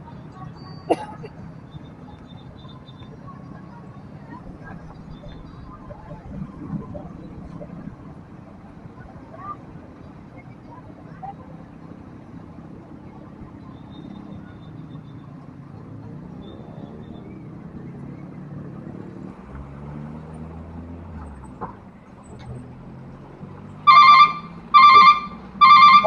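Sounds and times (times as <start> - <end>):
heavy vehicle engine droning: 0.0 - 26.0
road traffic: 0.0 - 26.0
level crossing alarm bell: 23.9 - 26.0.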